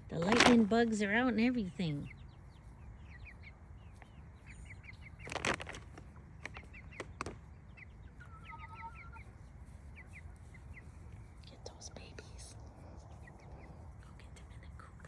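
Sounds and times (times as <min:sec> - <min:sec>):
wings flapping rustle: 0:00.0 - 0:01.1, 0:05.1 - 0:07.7
young chickens peeping: 0:00.0 - 0:15.0.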